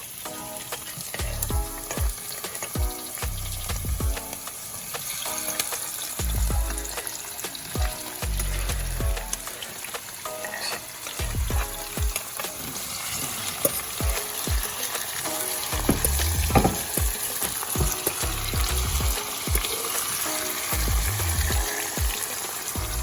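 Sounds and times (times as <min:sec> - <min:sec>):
faint background music: 0:00.0 - 0:23.0
food sizzling in a pot: 0:00.0 - 0:23.0
utensil knocking against pot: 0:15.8 - 0:18.3.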